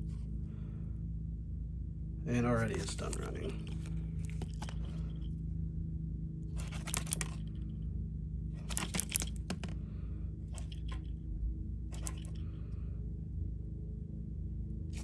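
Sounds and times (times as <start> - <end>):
steady low hum: 0.0 - 15.0
wristwatch clicking and rattling: 2.7 - 5.3, 6.6 - 7.6, 8.6 - 9.8, 10.6 - 11.1, 11.9 - 12.4.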